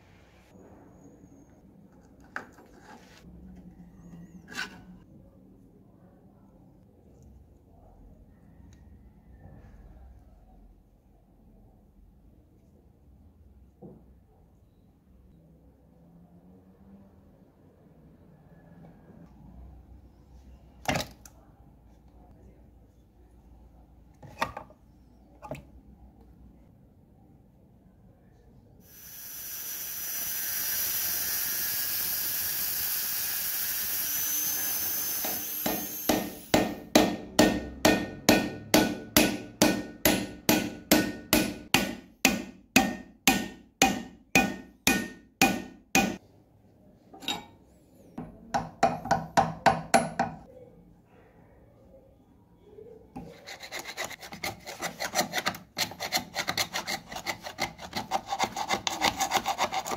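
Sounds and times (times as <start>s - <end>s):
small power tool whining: 28.9s - 36.6s
hammer striking metal: 35.2s - 46.2s
filing metal rasping: 53.2s - 59.9s.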